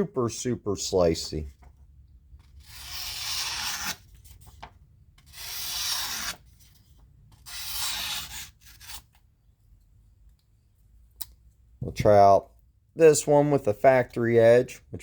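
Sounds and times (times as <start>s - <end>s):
knife slicing paper: 2.6s - 4.1s, 5.3s - 6.4s, 7.4s - 9.1s.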